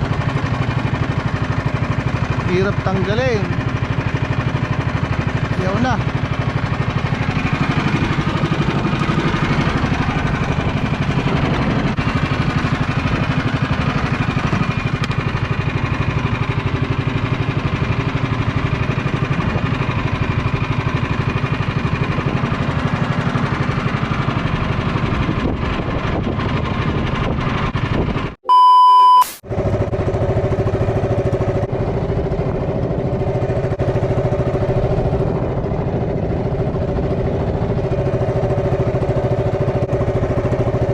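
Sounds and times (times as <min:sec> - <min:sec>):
small engine running: 0:00.0 - 0:28.3, 0:29.5 - 0:40.9
loud electronic beep: 0:28.4 - 0:29.4.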